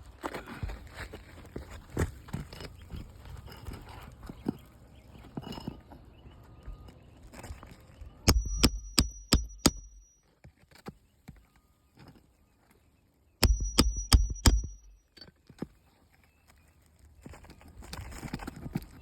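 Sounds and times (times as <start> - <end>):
metal tool striking roof: 8.3 - 10.1, 13.4 - 15.0.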